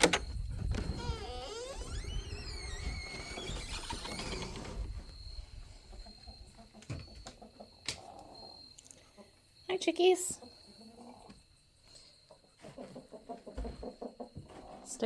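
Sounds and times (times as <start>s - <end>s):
chickens squealing: 0.8s - 5.1s.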